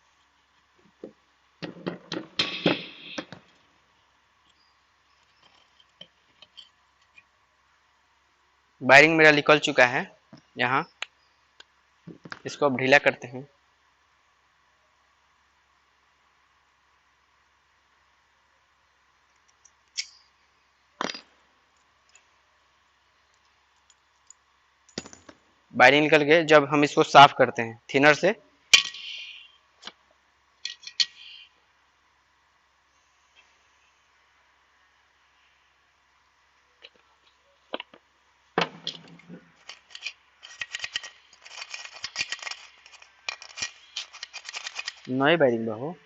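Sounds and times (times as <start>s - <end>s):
small metal parts clicking: 30.6s - 31.4s, 38.8s - 45.1s.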